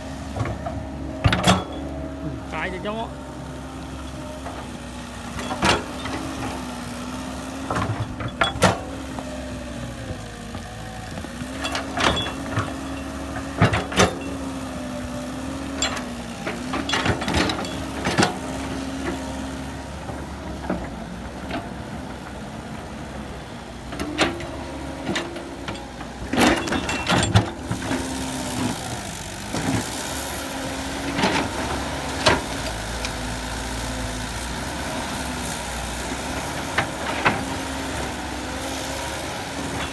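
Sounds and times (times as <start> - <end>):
heavy diesel engine working: 0.0 - 39.9
sharp metal clanks and knocks: 1.2 - 1.9, 7.7 - 9.0.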